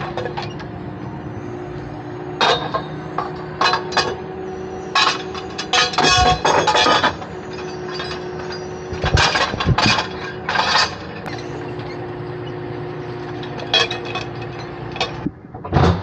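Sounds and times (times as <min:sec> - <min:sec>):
heavy machine engine idling: 0:00.0 - 0:15.7
loud knocks and clatters: 0:05.2 - 0:07.2, 0:08.9 - 0:11.2.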